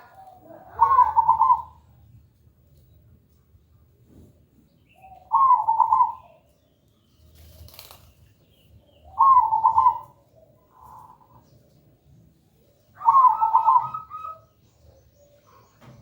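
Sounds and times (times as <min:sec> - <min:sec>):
dove cooing: 0:00.0 - 0:01.9, 0:05.0 - 0:06.3, 0:09.1 - 0:11.4, 0:13.0 - 0:14.5.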